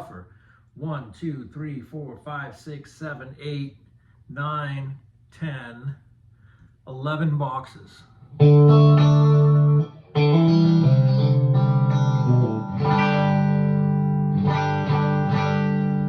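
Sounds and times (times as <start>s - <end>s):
electric guitar chords ringing: 8.3s - 16.0s.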